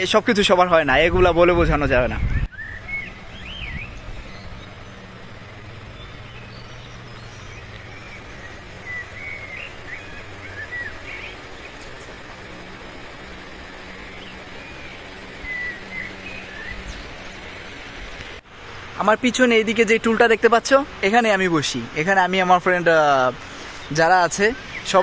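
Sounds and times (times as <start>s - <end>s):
small birds chirping: 0.0s - 18.4s, 19.1s - 25.0s
steady low hum: 2.2s - 18.9s.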